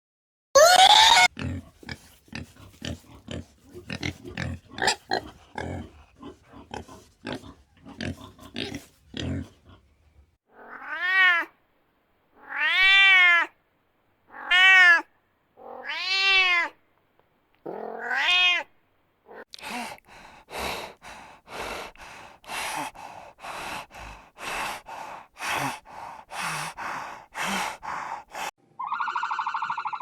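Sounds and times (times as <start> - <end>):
cat meowing: 10.6 - 11.5, 12.4 - 13.5, 14.3 - 16.8, 17.7 - 18.7.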